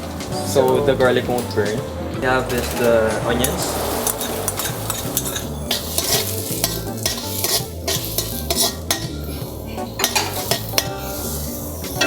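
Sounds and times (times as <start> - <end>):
spatula scraping in a wok: 2.5 - 12.0
onions sizzling in oil: 3.4 - 12.0.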